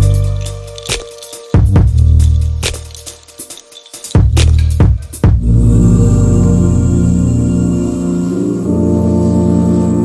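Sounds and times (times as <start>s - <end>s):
music with heavy bass and drums: 0.0s - 5.8s.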